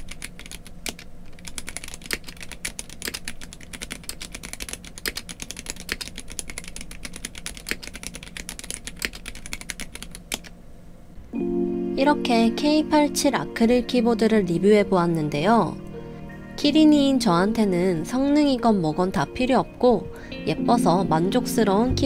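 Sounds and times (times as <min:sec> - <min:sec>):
mechanical keyboard typing: 0:00.0 - 0:10.5.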